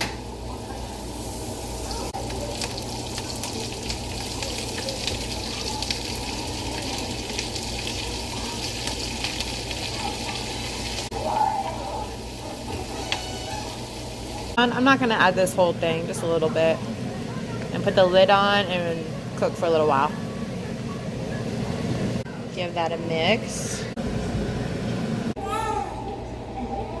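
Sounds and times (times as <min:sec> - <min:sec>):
food sizzling in a hot pan: 0:00.8 - 0:14.6.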